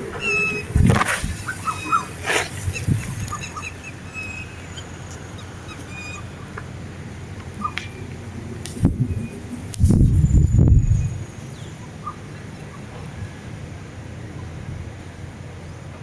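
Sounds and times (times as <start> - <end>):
wind rumble on microphone: 0.0 - 4.7, 5.4 - 16.0
birds chirping and whistling: 0.0 - 6.5, 7.6 - 8.2, 8.8 - 12.3.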